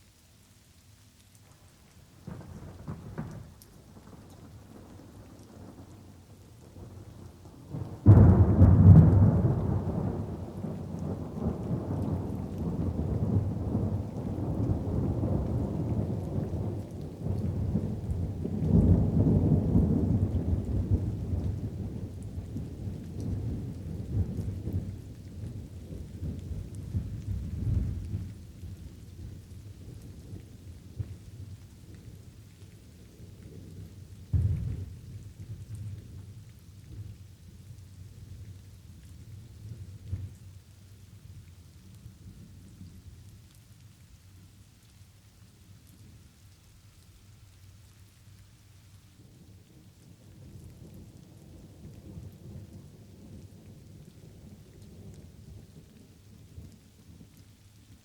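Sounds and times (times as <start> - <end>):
light rain: 0.0 - 58.0
thunder rumbling: 7.7 - 28.4, 34.3 - 36.3
loud thunderclap: 8.0 - 10.4.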